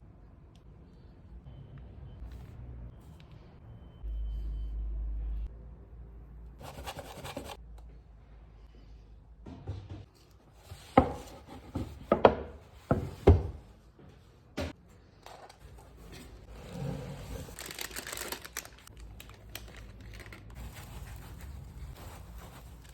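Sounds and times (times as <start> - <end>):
crinkling: 17.3 - 22.9.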